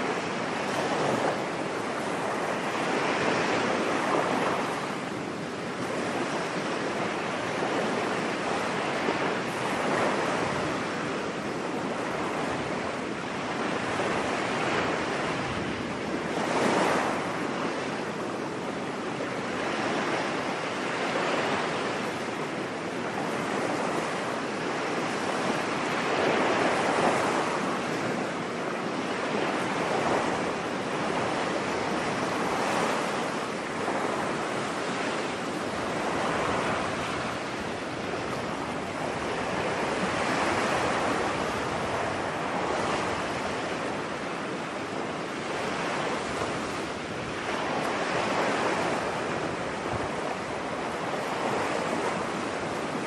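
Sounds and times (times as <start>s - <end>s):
waves breaking on a beach: 0.0s - 53.0s.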